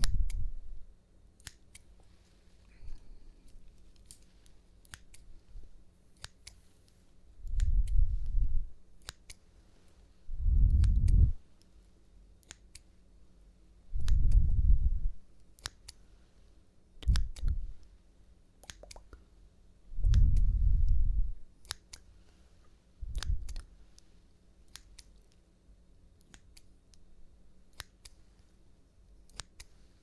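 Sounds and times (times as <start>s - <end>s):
scissors snipping clicks: 1.4s - 1.9s, 2.9s - 5.5s, 6.1s - 6.6s, 7.4s - 9.4s, 12.4s - 12.9s, 15.5s - 16.0s, 17.0s - 17.7s, 21.6s - 22.1s, 23.1s - 25.4s, 26.2s - 27.0s, 27.7s - 28.2s, 29.3s - 29.8s
dull low rumbles: 7.4s - 8.8s, 10.3s - 11.4s, 19.9s - 21.4s, 23.0s - 23.6s.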